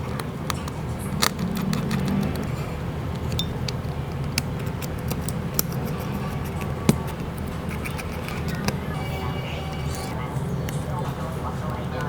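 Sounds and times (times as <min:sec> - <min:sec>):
small tools clicking and tapping: 0:00.0 - 0:08.9.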